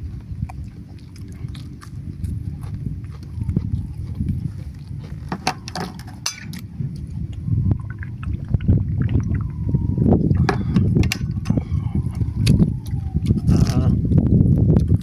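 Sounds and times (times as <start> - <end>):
water sloshing: 4.0 - 13.2
cooking pot and utensils clinking: 5.4 - 6.6.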